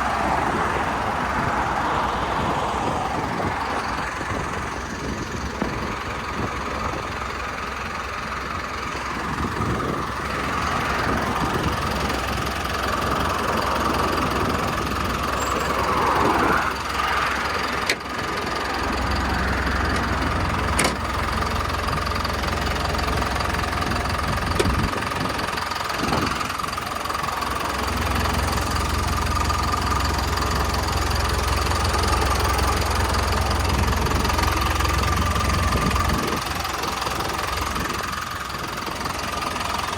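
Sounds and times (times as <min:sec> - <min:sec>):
constant whine: 0:00.0 - 0:39.9
diesel truck engine running: 0:00.0 - 0:39.9
deep low drone: 0:09.2 - 0:22.0.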